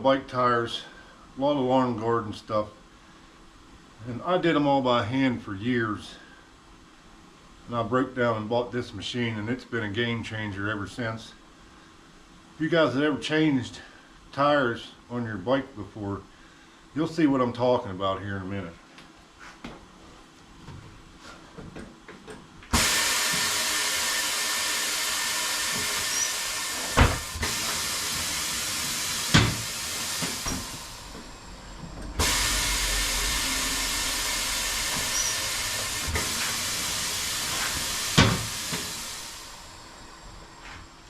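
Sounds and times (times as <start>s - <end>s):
compressed air hissing: 22.7s - 40.0s.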